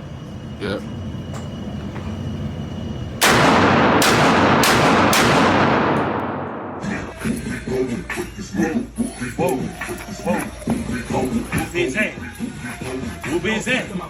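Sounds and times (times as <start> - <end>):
gunshots with echo: 3.2 - 7.2.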